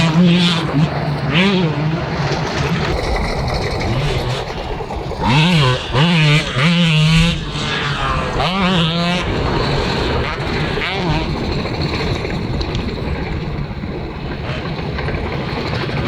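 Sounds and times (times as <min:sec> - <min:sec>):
dirt bike engine revving: 0:00.0 - 0:03.0, 0:03.8 - 0:12.1.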